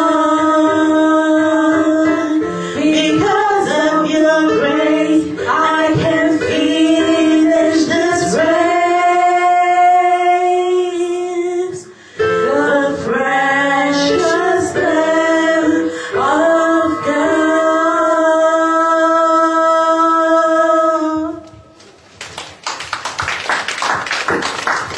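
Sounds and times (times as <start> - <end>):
women singing gospel: 0.0 - 21.5.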